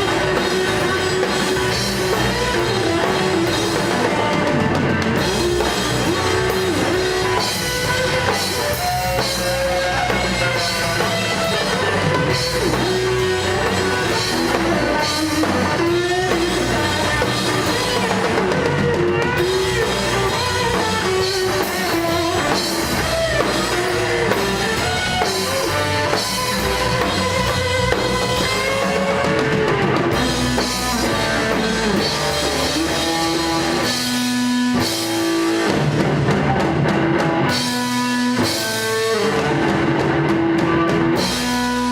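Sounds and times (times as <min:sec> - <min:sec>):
bass guitar: 0:00.0 - 0:41.9
drum kit: 0:00.0 - 0:41.9
fuzz-toned electric guitar: 0:00.0 - 0:41.9.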